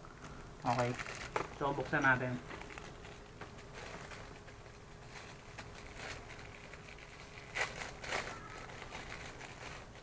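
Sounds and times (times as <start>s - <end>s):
plastic packaging rustling: 0.2s - 10.0s.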